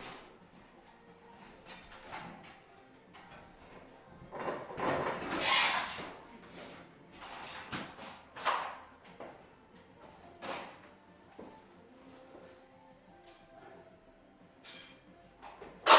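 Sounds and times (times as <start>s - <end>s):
garage door parts scraping: 4.3s - 8.8s.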